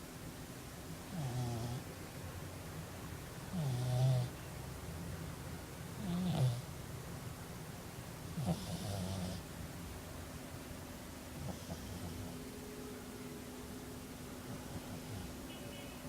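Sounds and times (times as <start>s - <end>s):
cat snoring: 1.1s - 1.9s, 3.5s - 4.3s, 6.0s - 6.7s, 8.4s - 9.4s, 11.4s - 12.4s, 14.5s - 15.4s.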